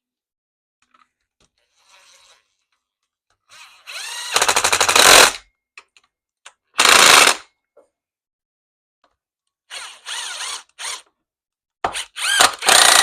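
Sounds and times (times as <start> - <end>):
impact driver hammering screw: 6.8 - 7.4, 11.8 - 13.0.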